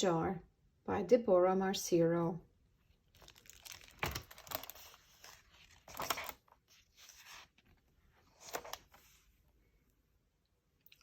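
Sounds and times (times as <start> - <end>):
book pages turning: 2.9 - 9.4.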